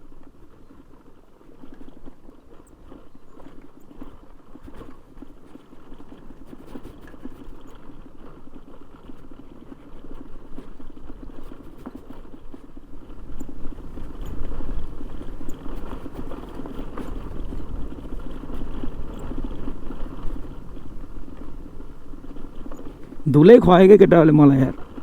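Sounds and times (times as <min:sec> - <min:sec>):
wind rumbling on microphone: 0:13.1 - 0:23.3.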